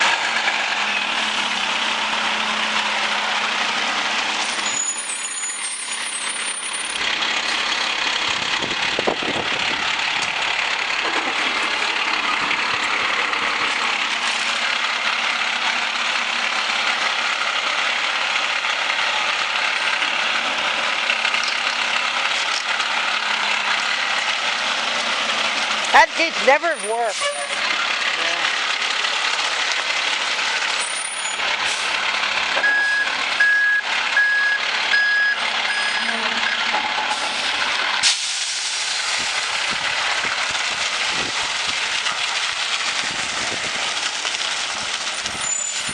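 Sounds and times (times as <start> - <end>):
garbage truck running: 0.0 - 45.9
high-pitched squeal: 4.4 - 7.0, 35.7 - 39.1.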